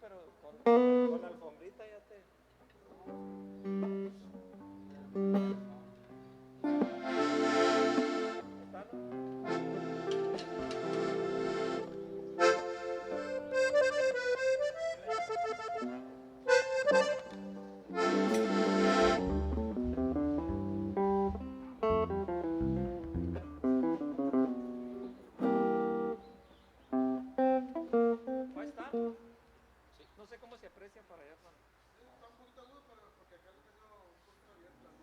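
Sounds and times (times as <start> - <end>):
plucked guitar notes: 0.7 - 1.4, 3.0 - 29.4
accordion chords: 6.6 - 29.3
low bass notes: 16.8 - 25.2.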